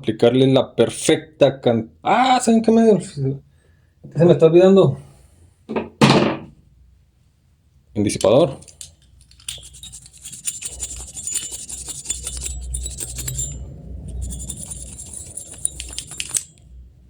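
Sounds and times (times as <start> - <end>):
scratchy scraping on metal fins: 9.3 - 16.6.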